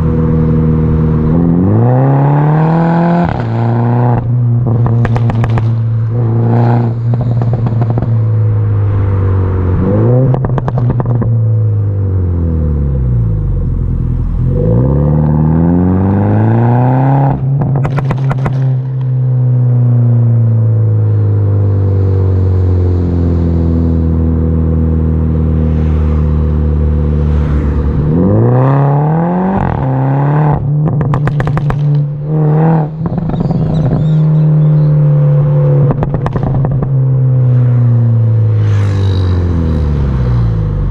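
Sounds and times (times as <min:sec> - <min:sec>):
car exhaust revving: 0:00.0 - 0:40.9
exhaust pops and crackles: 0:04.8 - 0:05.9, 0:10.4 - 0:11.3, 0:17.6 - 0:19.1, 0:30.8 - 0:32.1, 0:35.9 - 0:37.0.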